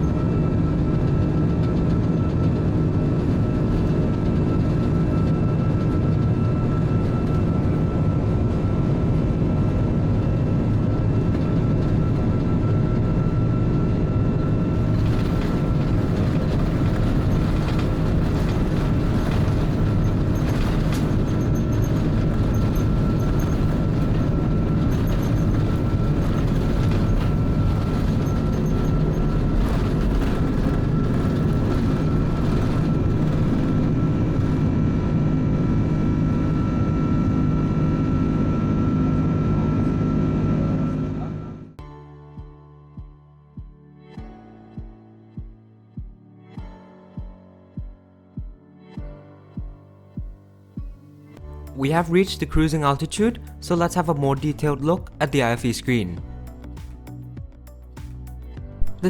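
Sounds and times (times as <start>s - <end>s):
jet engine cabin rumble: 0.0s - 41.8s
rough rattling: 14.8s - 34.5s.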